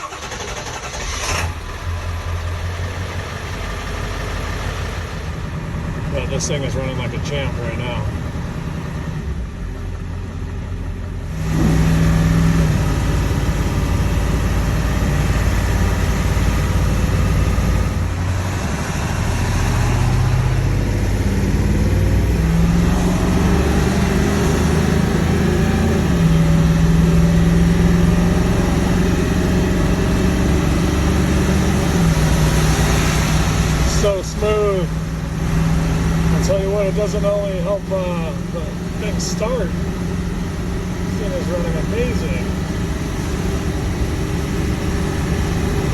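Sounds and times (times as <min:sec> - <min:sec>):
diesel engine running under load: 0:00.0 - 0:45.9.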